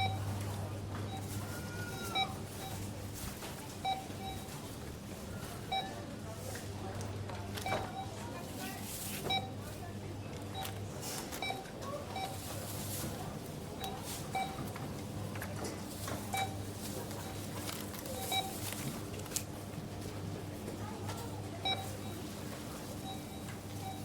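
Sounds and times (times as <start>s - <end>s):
barcode scanner beeps: 0.0s - 0.3s, 1.1s - 2.9s, 3.8s - 4.5s, 7.6s - 9.6s, 10.5s - 12.5s, 13.8s - 14.7s, 16.2s - 17.5s, 18.1s - 18.8s, 21.6s - 24.0s
low hum of store: 0.0s - 24.0s.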